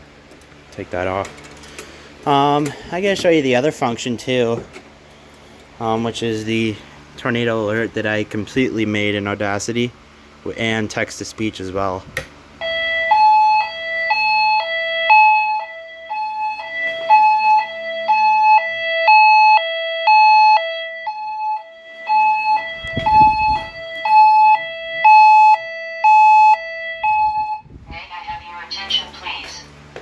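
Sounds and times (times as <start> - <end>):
two-tone alarm signal over speakers: 12.6 - 27.7.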